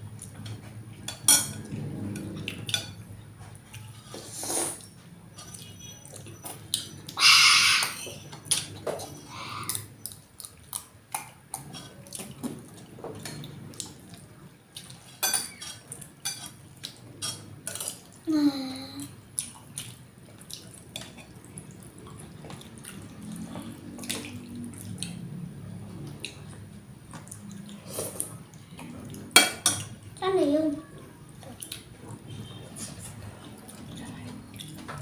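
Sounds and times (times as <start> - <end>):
wet eating sounds: 1.6 - 35.0.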